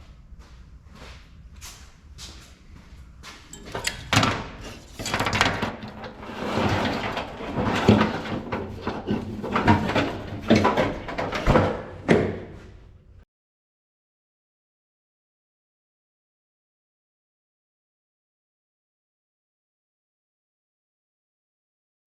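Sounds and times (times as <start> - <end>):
knocks and bumps: 3.5 - 12.7.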